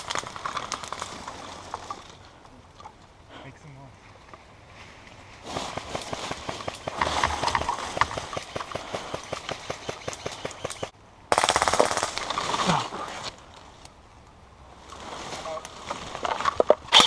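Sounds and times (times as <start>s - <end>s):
airsoft guns firing full auto: 8.0s - 12.2s.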